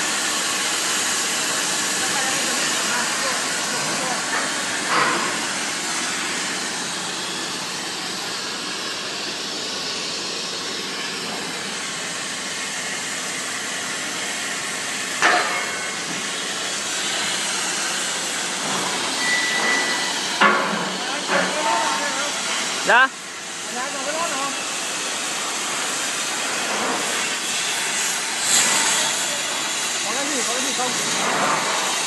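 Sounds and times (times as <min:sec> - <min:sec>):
plasma cutting torch hissing: 0:00.0 - 0:32.0
short beep: 0:19.2 - 0:20.2.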